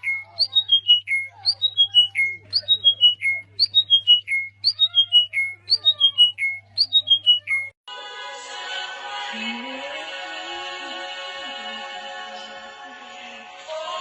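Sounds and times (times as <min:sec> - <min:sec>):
bird whistled call: 0:00.0 - 0:07.7
soft bird chirps: 0:00.0 - 0:07.8.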